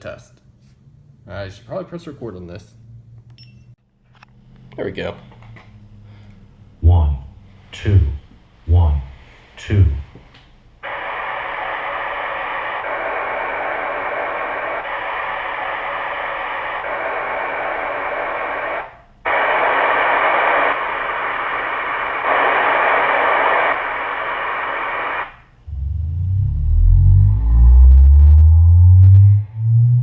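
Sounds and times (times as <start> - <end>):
static hiss: 10.8 - 25.5.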